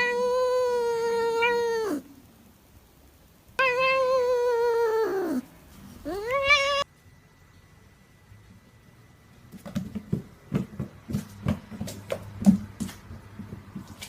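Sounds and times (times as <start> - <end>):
cat meowing: 0.0 - 2.1, 3.6 - 6.9.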